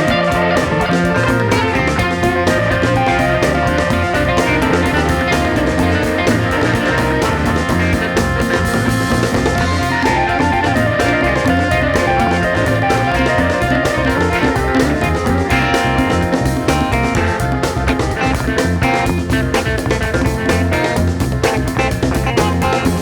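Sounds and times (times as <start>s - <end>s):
bass guitar: 0.0s - 23.0s
drum kit beat: 0.0s - 23.0s
guitars: 0.0s - 23.0s.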